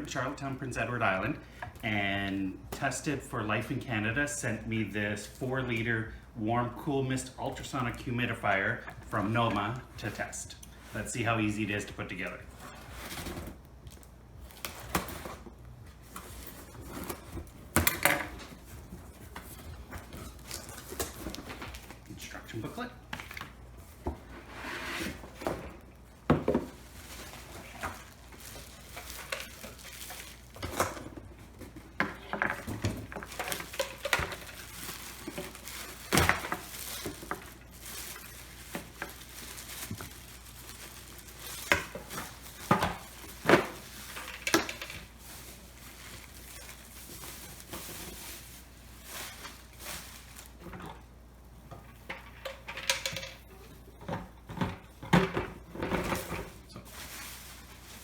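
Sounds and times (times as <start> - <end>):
plastic parts clattering: 25.3 - 48.4, 51.7 - 58.0.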